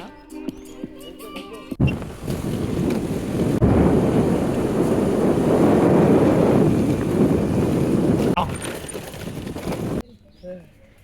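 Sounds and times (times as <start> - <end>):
wind buffeting the microphone: 1.8 - 10.0.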